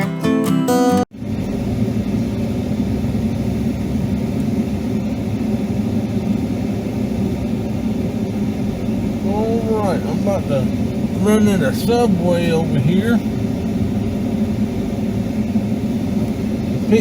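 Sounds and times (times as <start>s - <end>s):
acoustic guitar music: 0.0s - 1.1s
car driving rumble: 1.1s - 17.0s.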